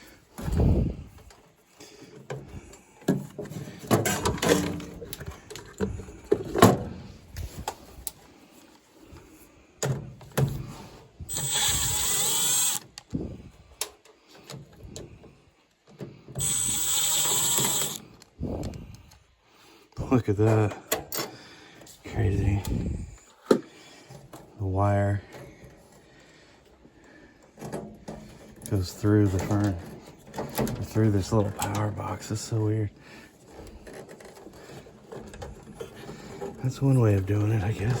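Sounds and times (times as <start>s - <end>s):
tools and metal parts clattering: 0.4s - 8.1s, 27.4s - 32.4s, 33.3s - 38.0s
cordless drill running: 11.3s - 13.0s, 16.4s - 18.2s.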